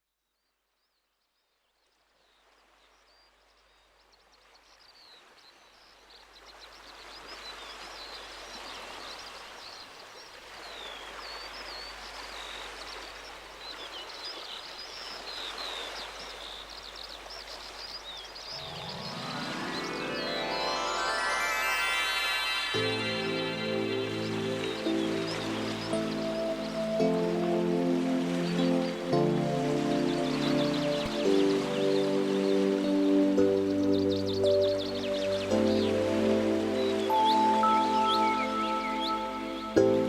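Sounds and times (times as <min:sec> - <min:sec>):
birds chirping: 0:10.8 - 0:40.0.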